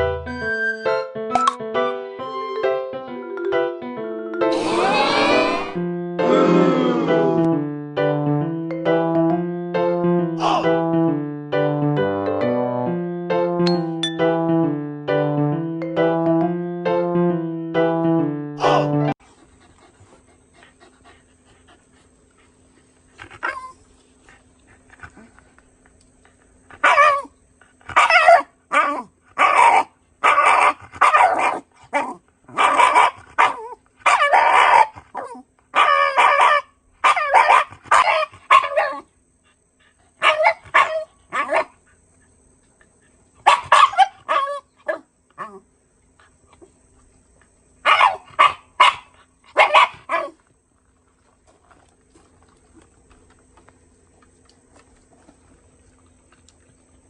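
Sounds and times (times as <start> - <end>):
dog barking: 27.9 - 35.0, 35.8 - 39.0, 40.2 - 41.8, 43.4 - 45.0, 47.8 - 50.4.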